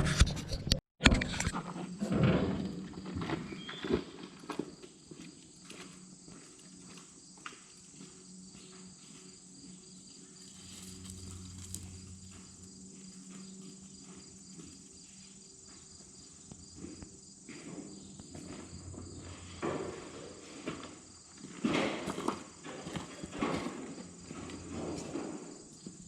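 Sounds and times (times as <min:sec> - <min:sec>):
insects chirping: 0:01.6 - 0:26.0
low hum: 0:10.3 - 0:14.2, 0:18.0 - 0:21.2.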